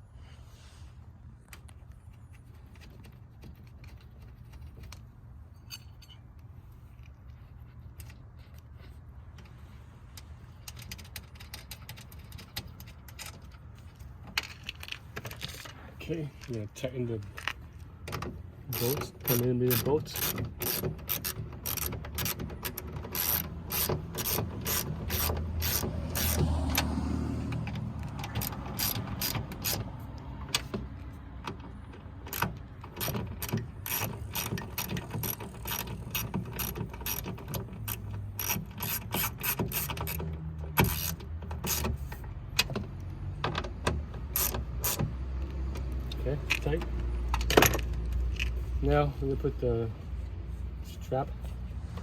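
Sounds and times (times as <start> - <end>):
ratchet wrench clicking: 18.6 - 26.9, 27.5 - 30.8, 31.4 - 42.6, 44.2 - 48.6.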